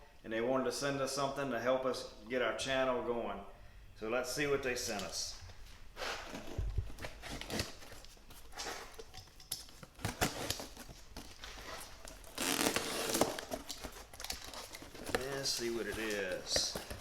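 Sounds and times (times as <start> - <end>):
cardboard scraping and crackling: 6.0 - 17.0
packing tape ripping: 6.0 - 17.0.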